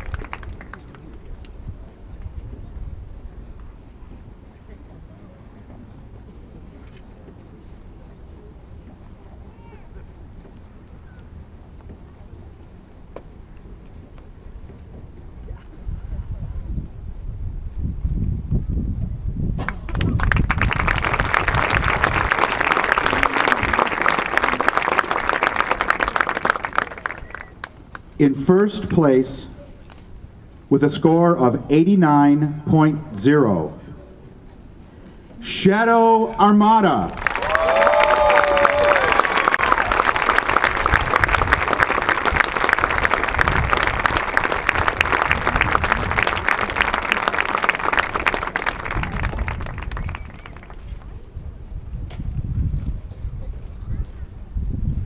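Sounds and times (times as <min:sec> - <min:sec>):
crowd applauding: 0:00.0 - 0:01.5, 0:19.8 - 0:28.0, 0:37.0 - 0:51.1.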